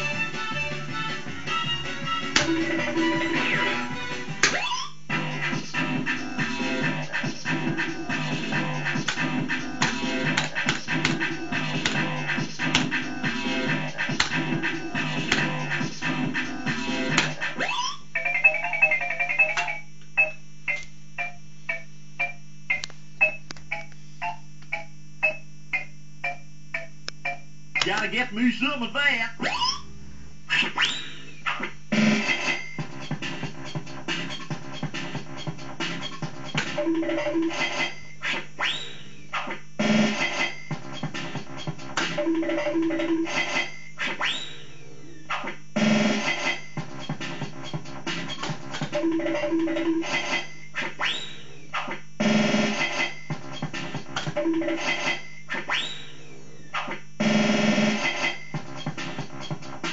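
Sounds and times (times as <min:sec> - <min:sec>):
synthesized backing music: 0:00.0 - 0:04.5, 0:05.1 - 0:17.6.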